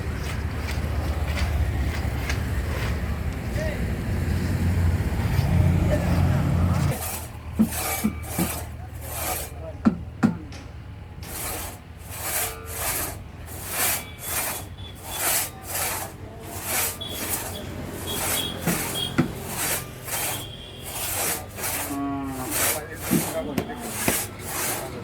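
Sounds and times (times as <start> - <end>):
hand tool rasping on wood: 6.0 - 9.6, 11.2 - 25.0.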